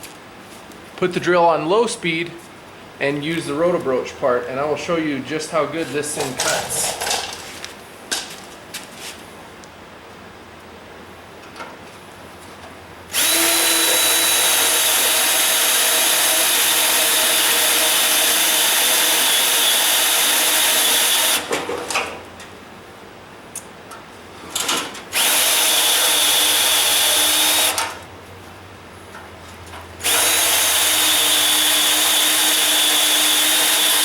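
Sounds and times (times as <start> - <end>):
electric drill cutting steel: 13.1 - 21.5, 25.1 - 28.0, 30.0 - 34.0.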